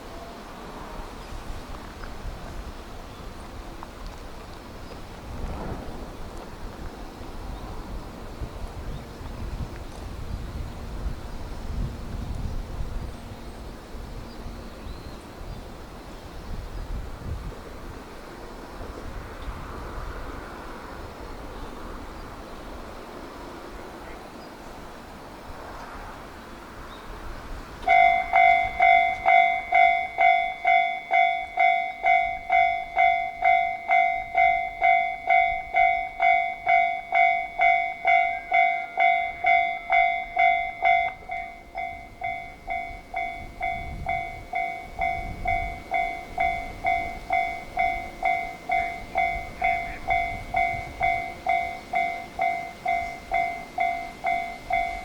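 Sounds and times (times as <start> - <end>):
low rumble: 5.2 - 7.8
level crossing alarm bell ringing: 27.8 - 55.0.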